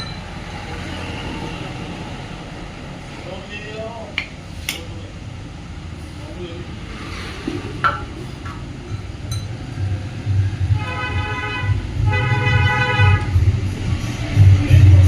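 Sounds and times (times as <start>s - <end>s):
low engine rumble: 0.0s - 15.0s
motorcycle horn honking: 10.8s - 13.3s.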